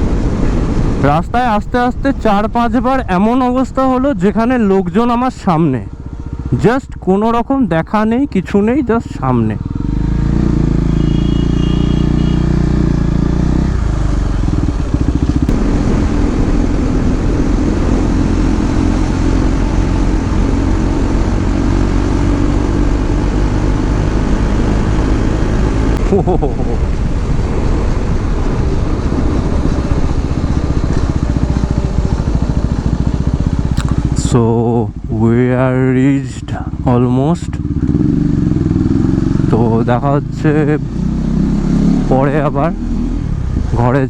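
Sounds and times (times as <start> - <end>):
wind rushing over microphone: 0.0 - 6.8, 13.2 - 35.6, 40.8 - 44.0
motorcycle engine running: 0.0 - 44.0.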